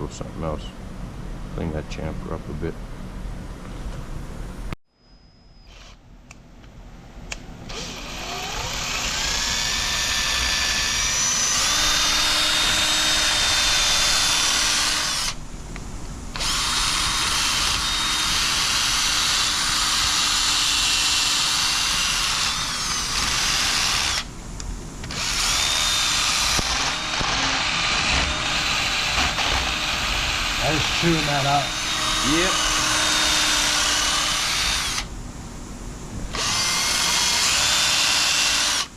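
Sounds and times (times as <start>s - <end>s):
drill whining with scraping: 5.5s - 6.0s, 7.7s - 15.4s, 16.3s - 24.3s, 25.1s - 35.1s, 36.3s - 38.9s.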